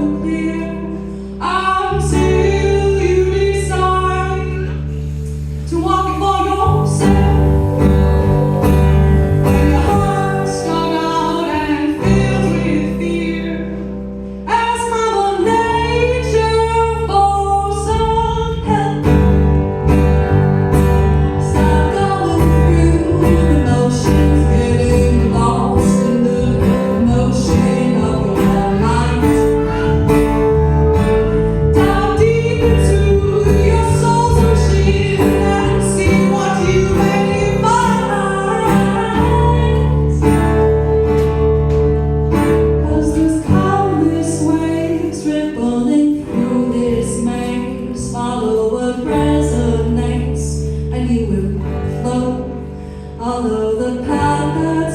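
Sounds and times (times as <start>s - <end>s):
woman singing: 0.0s - 41.7s, 42.4s - 54.9s
strummed guitar: 0.0s - 54.9s.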